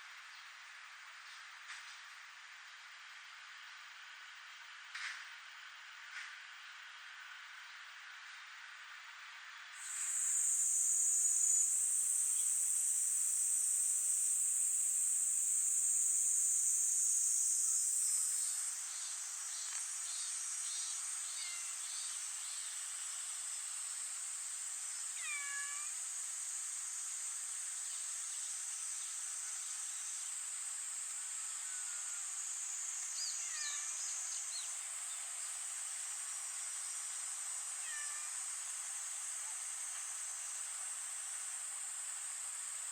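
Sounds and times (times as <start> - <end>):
high-pitched insect chorus: 9.6 - 42.9
cat meowing: 25.2 - 25.9, 33.4 - 34.0, 37.8 - 38.4.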